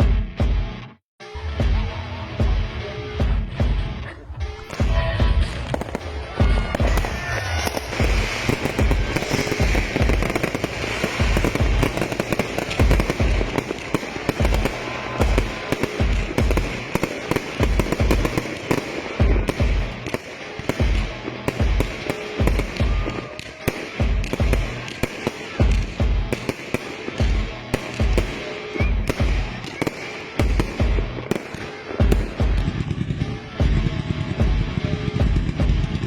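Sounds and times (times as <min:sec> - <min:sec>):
music playing: 0:00.0 - 0:36.0
fireworks crackling: 0:04.6 - 0:36.0
firework shell bursts: 0:06.8 - 0:32.6.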